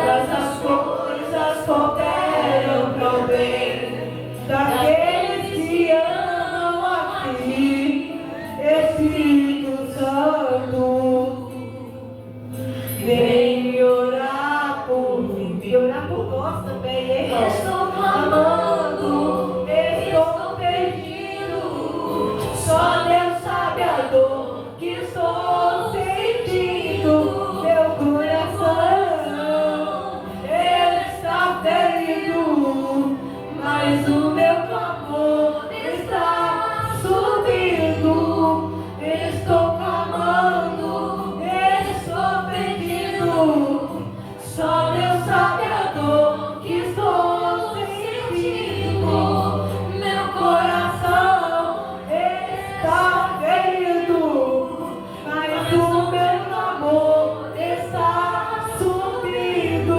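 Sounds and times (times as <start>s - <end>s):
voices singing gospel song: 0.0s - 59.9s.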